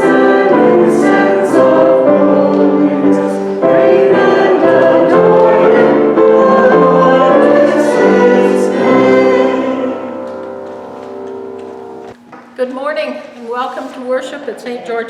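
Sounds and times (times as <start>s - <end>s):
choir singing a hymn: 0.0s - 11.0s.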